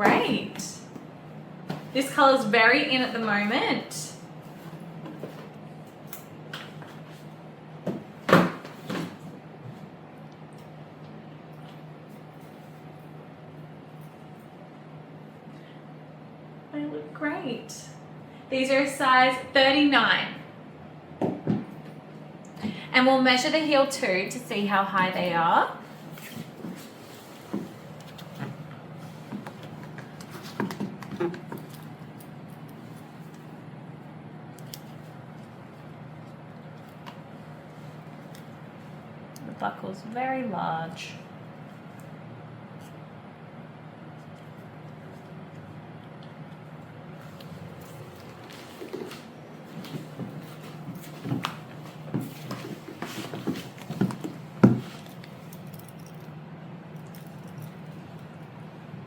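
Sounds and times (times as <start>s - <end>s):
steady low hum: 0.0s - 59.0s
shoes tapping and knocking: 49.8s - 55.0s.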